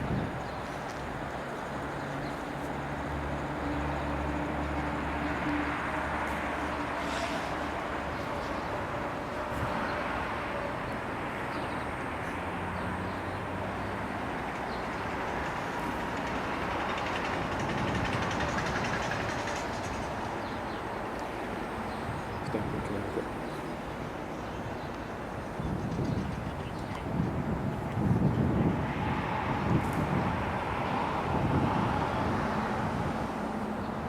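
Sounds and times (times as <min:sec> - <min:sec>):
passenger train rumbling by: 0:00.0 - 0:34.0.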